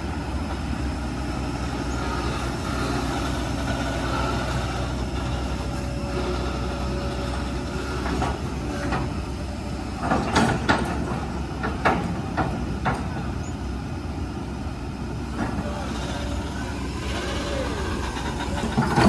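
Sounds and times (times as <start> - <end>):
excavator diesel engine running: 0.0 - 19.0
sharp knocks and clanks: 10.0 - 13.3.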